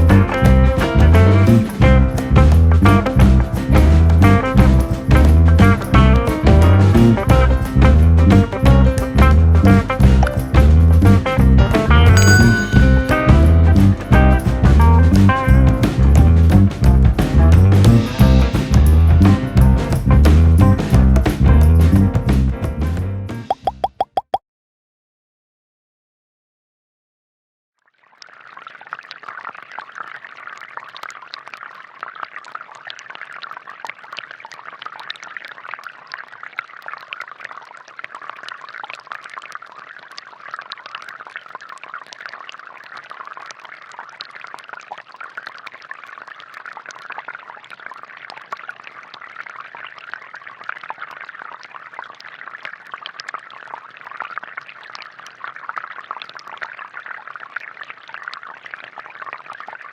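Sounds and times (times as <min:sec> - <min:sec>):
water spatters and drips: 0:00.0 - 0:22.6, 0:27.8 - 0:59.9
water splashing and trickling: 0:00.0 - 0:24.4, 0:27.8 - 0:59.9.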